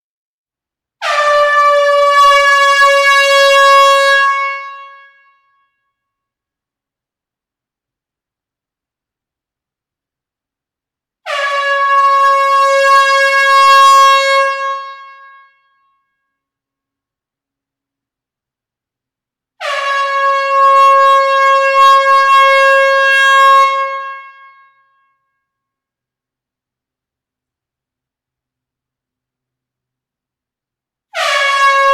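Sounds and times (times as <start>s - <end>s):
air horn blast: 1.0s - 5.2s, 11.3s - 15.6s, 19.6s - 24.7s, 31.1s - 31.9s.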